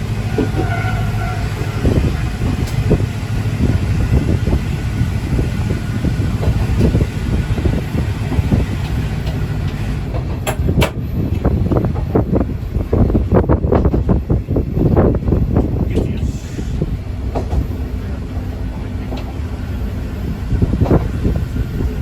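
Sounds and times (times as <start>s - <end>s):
wheel-on-rail clatter: 0.0s - 14.2s
diesel railcar rumble: 0.0s - 22.0s.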